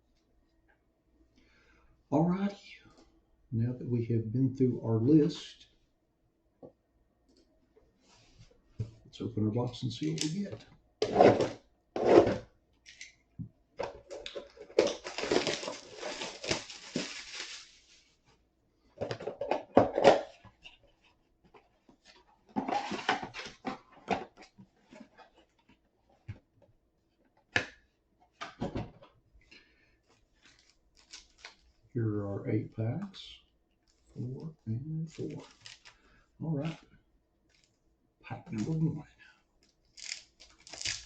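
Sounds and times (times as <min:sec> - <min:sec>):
card packs rustling: 0:14.0 - 0:18.2, 0:30.2 - 0:31.8, 0:35.1 - 0:36.0
wrapping crinkling: 0:14.2 - 0:18.4, 0:30.3 - 0:31.8, 0:35.1 - 0:36.0, 0:39.9 - 0:41.0
cardboard tearing: 0:14.8 - 0:17.8, 0:40.0 - 0:41.0.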